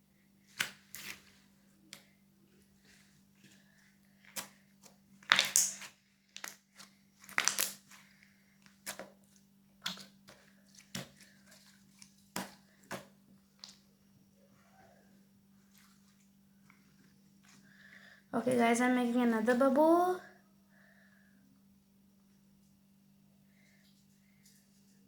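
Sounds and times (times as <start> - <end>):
slime popping and crackling: 5.2 - 7.9
faint low hum: 5.9 - 25.0.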